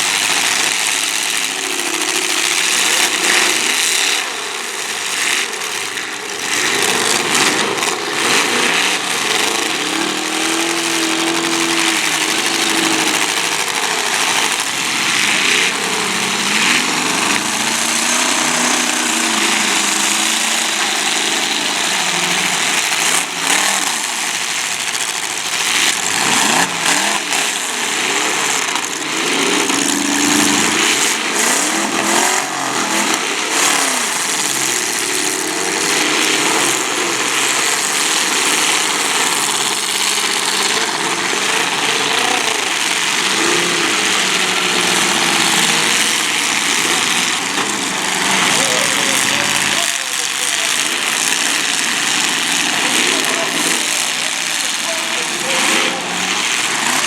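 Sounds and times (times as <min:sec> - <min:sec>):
car engines revving: 0:00.0 - 0:57.0.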